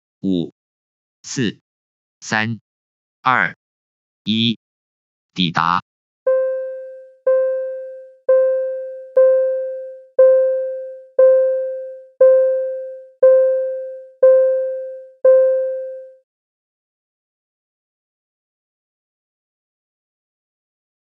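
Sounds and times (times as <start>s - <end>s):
electric piano-like alert chime: 6.3s - 16.2s.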